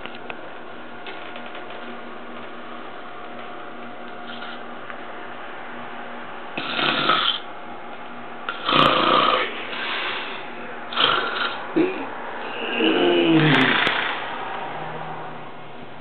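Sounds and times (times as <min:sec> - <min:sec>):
man snoring: 0:06.6 - 0:07.4, 0:08.5 - 0:14.2.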